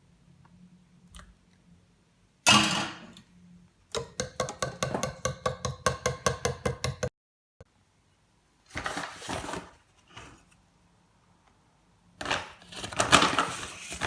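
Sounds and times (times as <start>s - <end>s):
utensil beating mixture in bowl: 3.9s - 7.1s.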